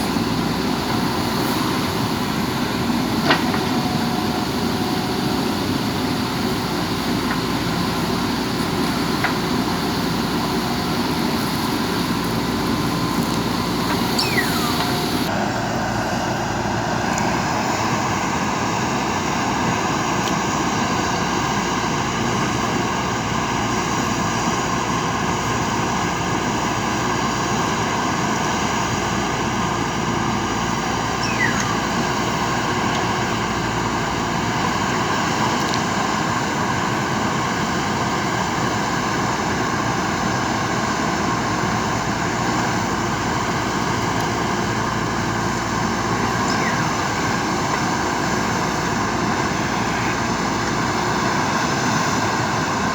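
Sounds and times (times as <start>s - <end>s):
machine rumble with high whine: 0.0s - 18.4s, 29.8s - 34.0s, 43.2s - 52.9s.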